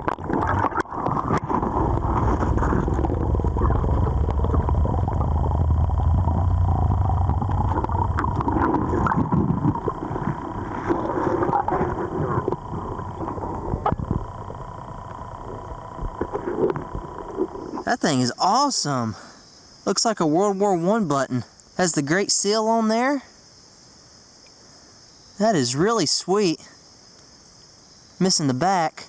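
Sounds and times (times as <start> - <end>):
muffled underwater river rumble: 0.0 - 17.9.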